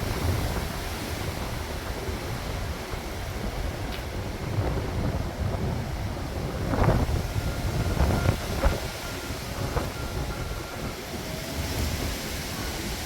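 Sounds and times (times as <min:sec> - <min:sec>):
storm wind buffeting microphone: 0:00.0 - 0:13.0.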